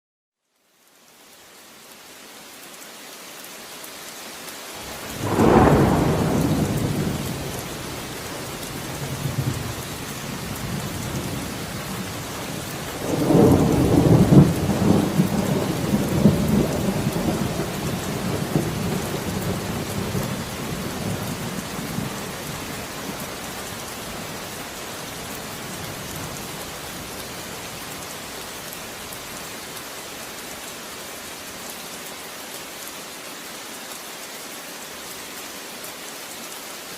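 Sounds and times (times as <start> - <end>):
steady rain hiss: 0.4 - 36.9
rolling thunder rumble: 4.9 - 23.3
thunder clap: 5.0 - 9.8.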